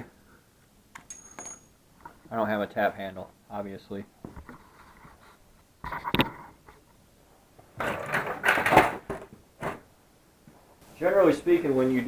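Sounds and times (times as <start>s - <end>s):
tools rattling and clinking: 1.0s - 1.8s.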